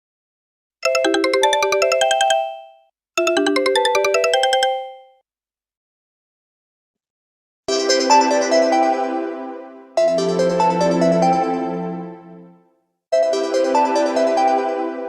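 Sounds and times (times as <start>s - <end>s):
phone ringtone chiming notes: 0.8s - 5.2s.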